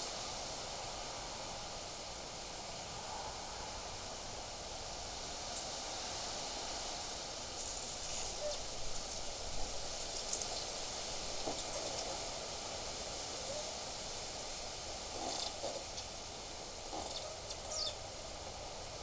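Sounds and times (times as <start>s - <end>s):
crackly rustles and ticks: 7.6s - 13.8s
leaves rustling: 7.6s - 14.0s.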